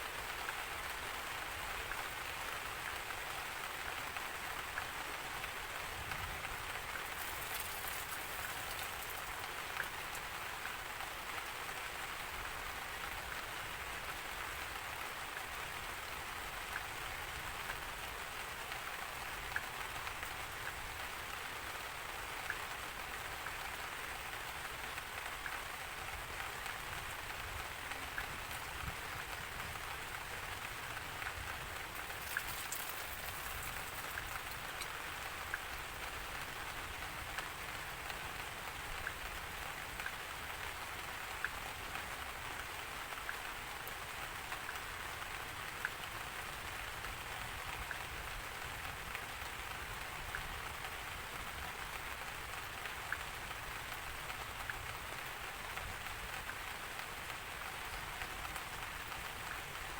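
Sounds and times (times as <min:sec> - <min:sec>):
rain hissing: 0:06.0 - 0:10.6, 0:27.5 - 0:35.9
single raindrops ticking: 0:06.2 - 0:10.4, 0:31.2 - 0:35.7.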